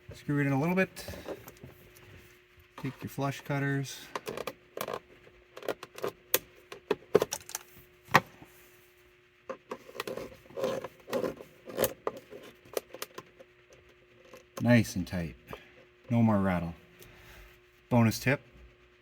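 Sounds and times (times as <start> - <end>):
screw rubbing and scraping: 9.5 - 14.6.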